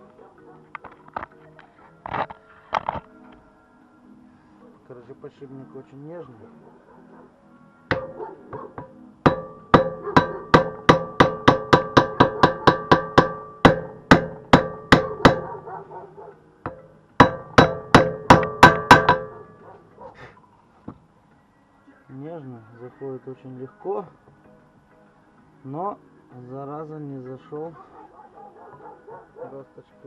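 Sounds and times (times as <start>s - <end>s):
hammer striking metal: 7.9s - 15.6s, 16.6s - 19.6s.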